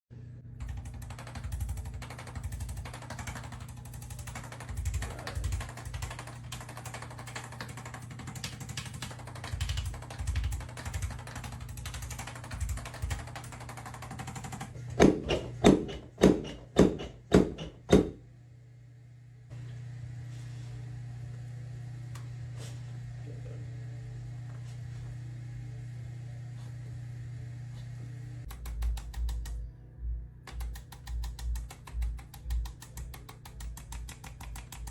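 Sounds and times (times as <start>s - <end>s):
low steady hum: 14.6s - 34.9s.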